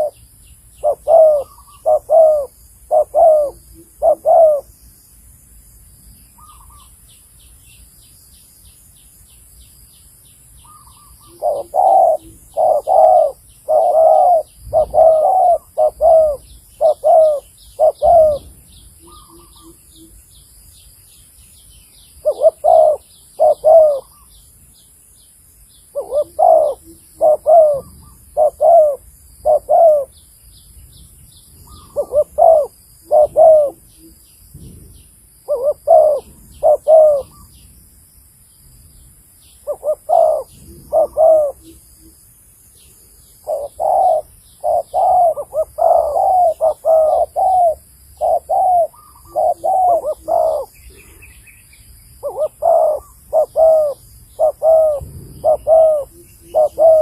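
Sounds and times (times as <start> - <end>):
dove cooing: 0.0 - 0.2, 0.8 - 4.7, 10.7 - 20.2, 22.2 - 24.3, 25.9 - 30.2, 31.6 - 37.6, 39.6 - 42.2, 43.4 - 51.5, 52.2 - 57.0.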